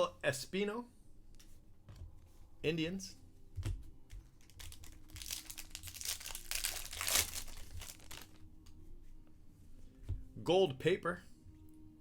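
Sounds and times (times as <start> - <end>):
card pack wrapper crinkling: 4.4 - 8.4.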